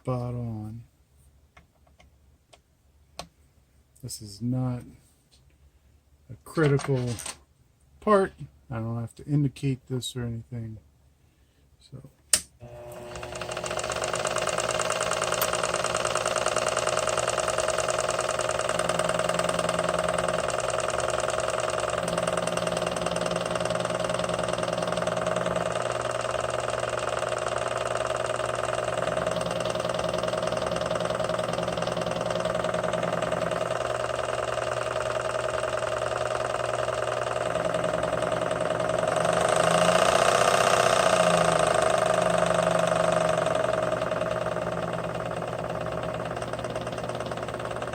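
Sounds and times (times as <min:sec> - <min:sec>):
lathe motor whine: 0:12.6 - 0:47.9.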